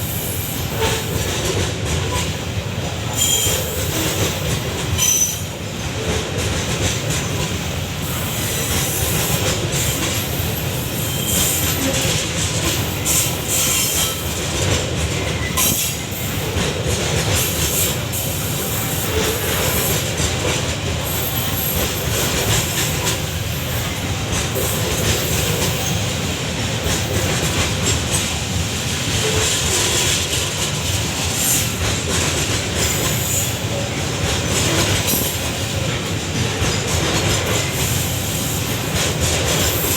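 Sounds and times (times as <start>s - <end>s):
train wagons rumbling by: 0.0s - 39.9s
high wheel squeals: 3.2s - 3.8s, 5.0s - 5.5s, 10.4s - 11.8s.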